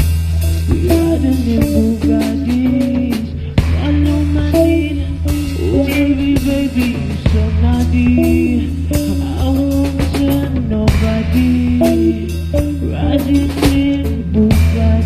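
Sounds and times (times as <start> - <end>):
bass: 0.0 - 15.0
drum kit beat: 0.0 - 15.0
electric guitar: 0.0 - 15.0
person singing: 0.5 - 15.0.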